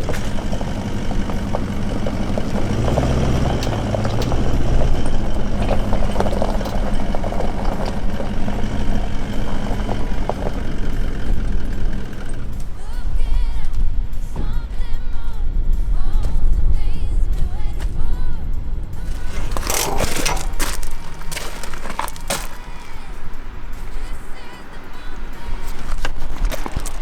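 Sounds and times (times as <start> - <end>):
stones crunching under tyres: 0.0 - 12.7, 19.0 - 27.0
car engine running: 0.0 - 13.4, 19.0 - 27.0.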